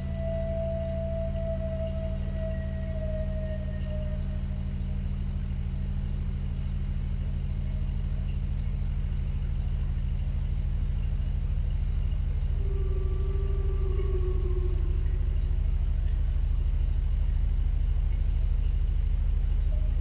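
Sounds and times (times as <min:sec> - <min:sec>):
wavering high tone: 0:00.0 - 0:04.8, 0:12.5 - 0:16.1
deep low rumbling drone: 0:00.0 - 0:20.0.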